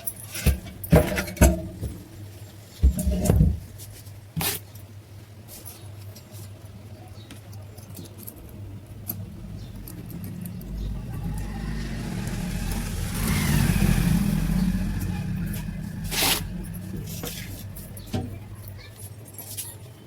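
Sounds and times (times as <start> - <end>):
low electrical hum: 0.0 - 20.0
fan whirring: 7.8 - 19.4
fan clattering knocks: 12.3 - 18.8.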